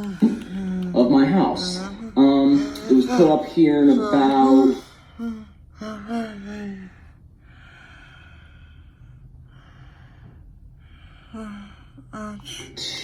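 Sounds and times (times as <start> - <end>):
man saying uh: 1.0 - 4.8
man breathing close to microphone: 6.9 - 12.0.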